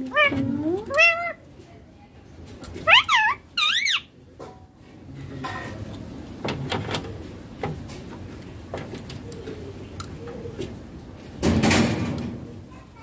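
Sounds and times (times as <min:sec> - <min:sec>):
parakeet calling: 0:02.9 - 0:04.1.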